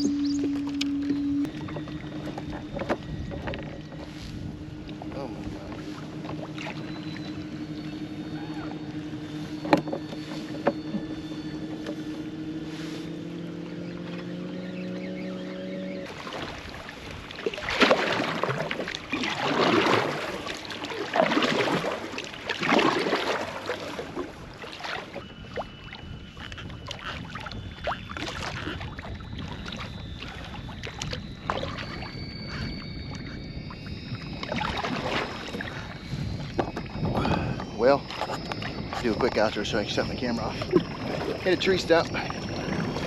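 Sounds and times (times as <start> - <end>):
water splashing alongside kayak: 0.0 - 14.5, 16.0 - 43.0
water lapping: 0.0 - 43.0.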